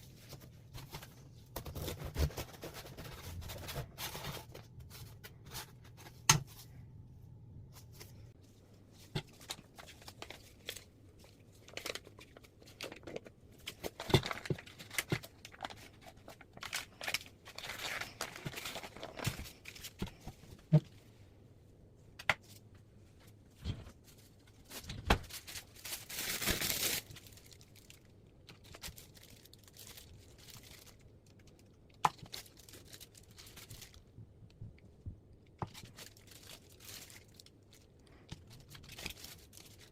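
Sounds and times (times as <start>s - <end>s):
packaging tearing and crinkling: 11.6s - 20.1s, 24.7s - 31.0s, 38.5s - 39.9s.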